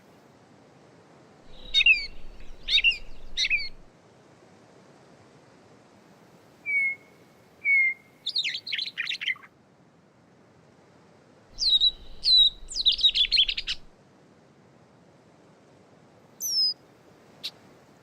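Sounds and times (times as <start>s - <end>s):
catbird singing: 1.5s - 3.9s, 11.6s - 13.9s.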